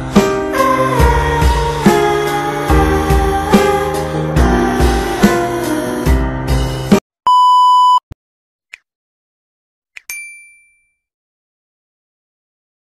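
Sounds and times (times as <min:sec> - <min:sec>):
censor bleep tone: 0:07.3 - 0:08.2
high ringing ding: 0:10.0 - 0:11.1.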